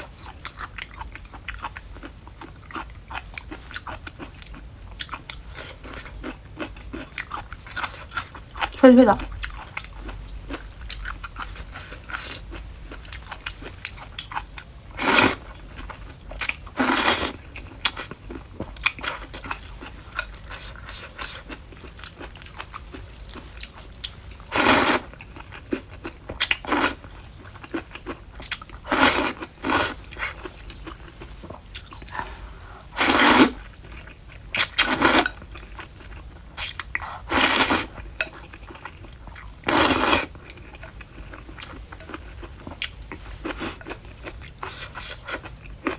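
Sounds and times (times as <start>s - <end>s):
person chewing with mouth clicks: 0.0s - 14.7s, 25.0s - 32.7s.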